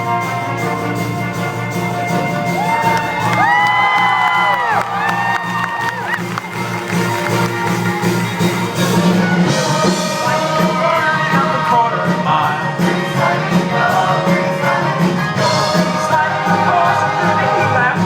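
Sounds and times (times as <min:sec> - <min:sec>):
loud show tune music: 0:00.0 - 0:18.0
group singing: 0:08.8 - 0:18.0.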